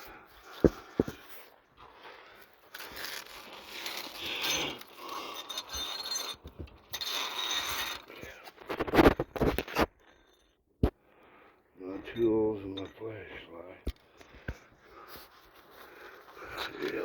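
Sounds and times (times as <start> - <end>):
tools scraping and rustling: 0.4 - 1.6, 2.5 - 11.0.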